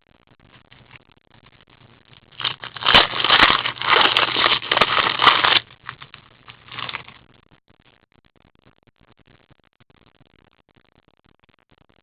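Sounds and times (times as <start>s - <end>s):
foil wrapper tearing and crinkling: 2.3s - 7.2s.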